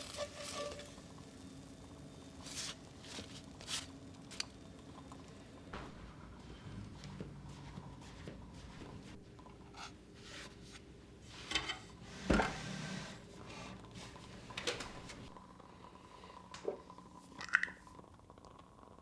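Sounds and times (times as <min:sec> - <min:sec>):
soft rubbing and scratching: 0:06.4 - 0:15.4.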